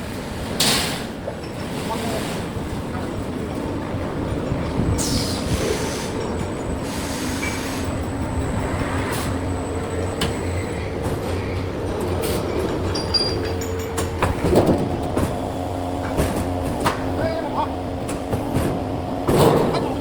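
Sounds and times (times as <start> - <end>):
machine hum: 7.6 - 20.0
metal clanks and knocks: 10.1 - 17.3, 18.0 - 20.0.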